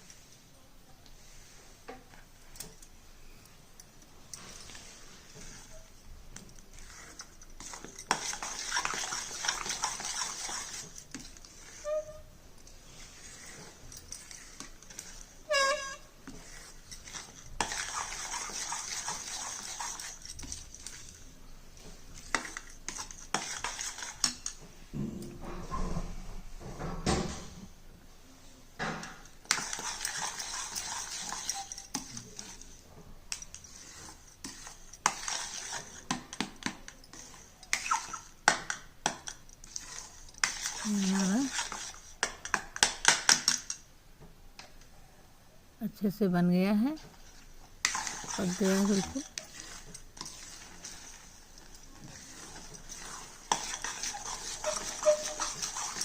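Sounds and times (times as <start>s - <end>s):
spatula scraping a pan: 6.7s - 12.3s, 12.9s - 21.2s, 22.1s - 24.6s, 29.4s - 43.2s, 47.1s - 56.0s.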